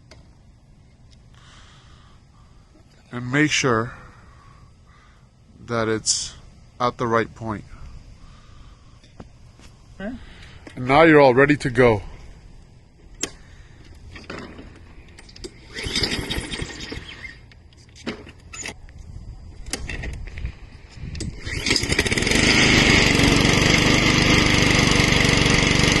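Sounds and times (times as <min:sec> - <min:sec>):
lawnmower engine running: 0:12.2 - 0:17.6, 0:20.7 - 0:26.0.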